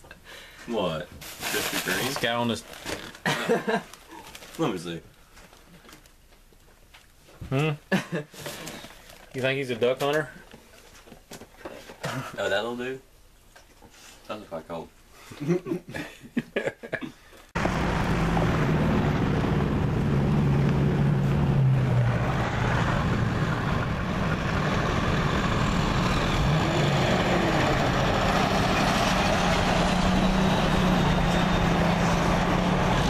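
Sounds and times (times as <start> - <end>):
heavy wind noise: 17.6 - 30.2
vehicle engine running: 17.6 - 33.0.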